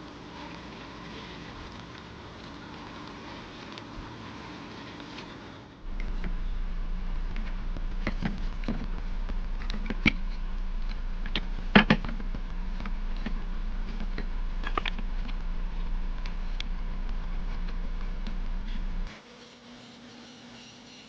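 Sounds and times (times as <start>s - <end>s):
steady low hum: 0.0s - 19.4s
objects clicking and knocking: 5.9s - 19.1s.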